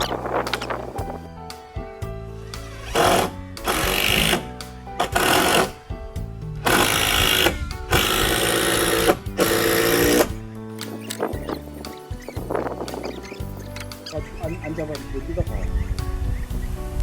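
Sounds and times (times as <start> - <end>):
power drill driving screws: 2.6 - 5.8, 6.6 - 10.3.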